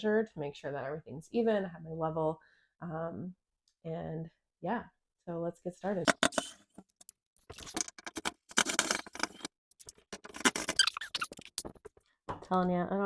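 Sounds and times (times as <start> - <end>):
door hardware and tools rattling: 7.6 - 11.3.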